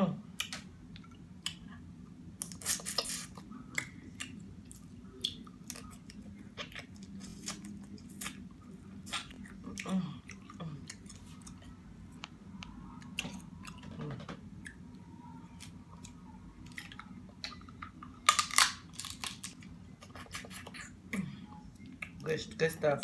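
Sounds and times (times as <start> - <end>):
chewing: 2.4 - 11.8
shellfish shells cracking: 18.2 - 19.6.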